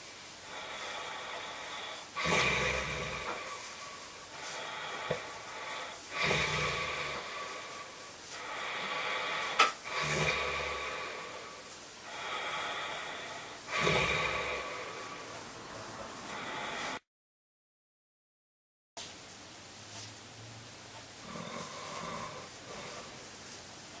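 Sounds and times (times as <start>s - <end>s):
noisy breathing: 0.0s - 17.0s, 21.2s - 24.0s
man snoring heavily: 0.5s - 17.0s, 21.2s - 23.2s.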